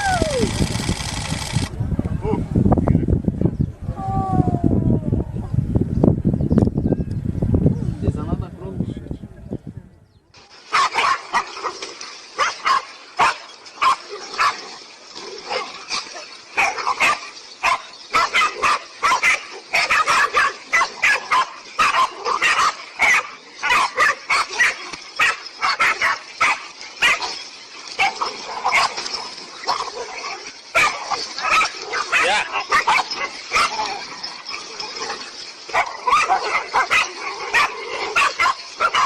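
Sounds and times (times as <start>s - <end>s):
dog barking and yipping: 10.7s - 39.0s.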